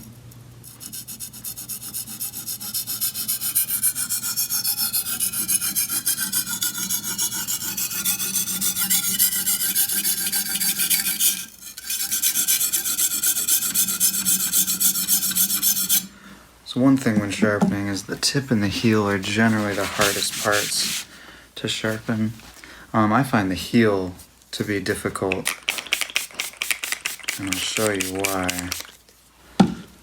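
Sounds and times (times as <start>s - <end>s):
knife scraping on sharpening stone: 0.7s - 16.1s.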